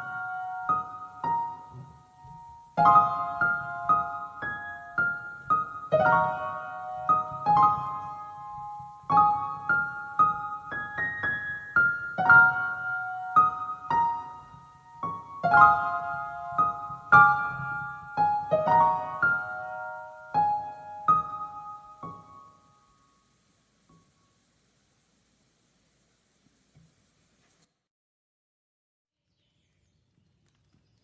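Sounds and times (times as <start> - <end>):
gentle piano music: 0.0 - 24.4.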